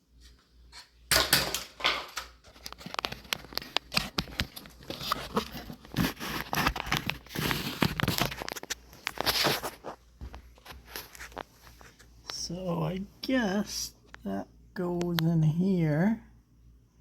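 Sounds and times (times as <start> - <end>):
small sharp clicks and crackles: 0.7 - 9.4
packaging crinkling and rustling: 0.7 - 12.4.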